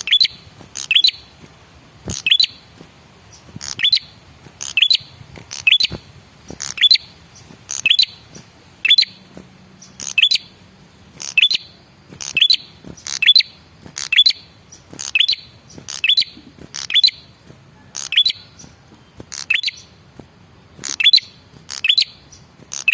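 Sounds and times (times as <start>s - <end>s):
tailorbird calling: 0.0s - 1.4s, 2.0s - 2.7s, 3.3s - 22.9s.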